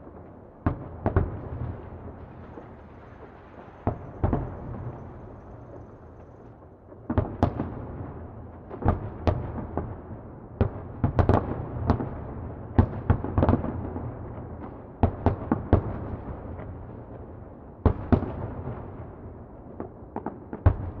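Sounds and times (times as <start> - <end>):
distant fireworks bangs: 0.7 - 6.5.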